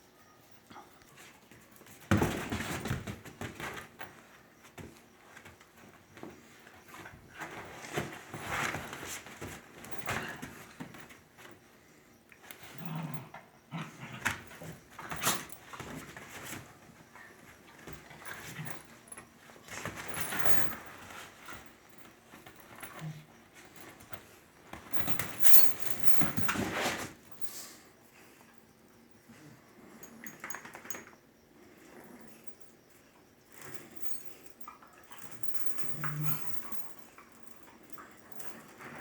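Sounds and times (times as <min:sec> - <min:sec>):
dogs growling and whimpering: 0:12.7 - 0:15.5, 0:31.6 - 0:32.6.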